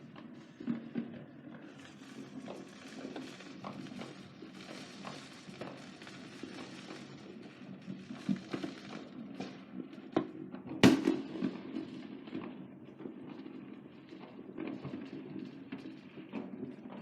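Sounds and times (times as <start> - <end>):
distant rumble: 10.8 - 11.4
loud firework bang: 10.8 - 11.7
firecracker pops: 10.8 - 12.0.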